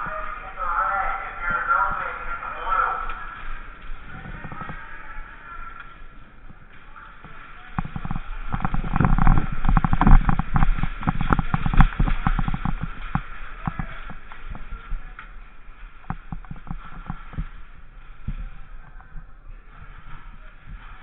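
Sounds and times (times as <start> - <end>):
sharp clicks and knocks: 6.5 - 15.3.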